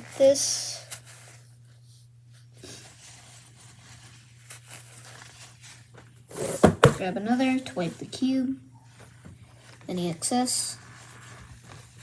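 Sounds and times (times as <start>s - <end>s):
tissue paper rustling: 0.0s - 6.7s, 8.8s - 12.0s.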